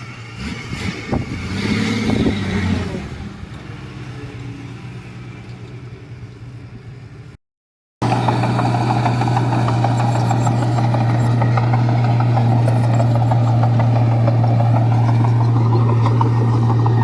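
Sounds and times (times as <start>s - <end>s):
dense rattle: 8.0s - 17.0s
heavy diesel engine running: 8.0s - 17.0s.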